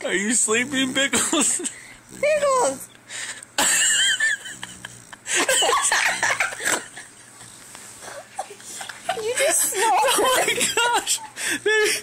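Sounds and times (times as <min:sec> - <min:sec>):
dog snorting: 0:00.2 - 0:02.9, 0:04.4 - 0:08.3
people laughing: 0:03.6 - 0:12.0.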